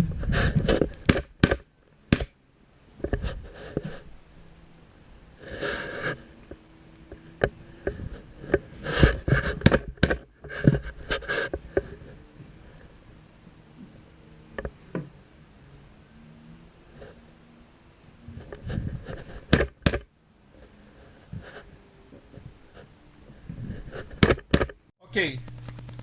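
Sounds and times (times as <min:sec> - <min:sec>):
rustling and movement: 0:25.1 - 0:26.0.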